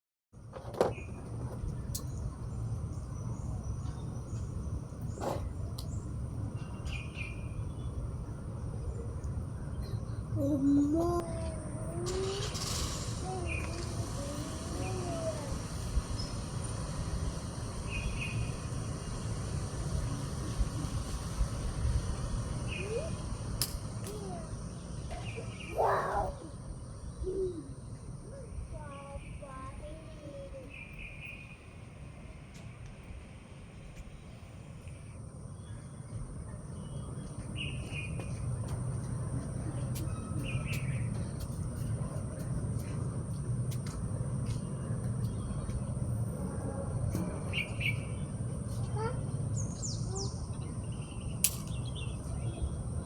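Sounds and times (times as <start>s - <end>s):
birds chirping: 0.9s - 19.2s, 24.2s - 31.8s, 34.0s - 46.4s, 47.2s - 53.0s
low steady rumble: 1.1s - 53.0s
faint distant voices: 7.6s - 17.6s.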